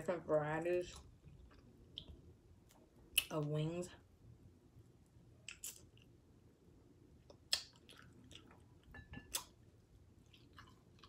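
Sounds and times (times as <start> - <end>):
person chewing: 5.4 - 6.2, 7.2 - 11.0.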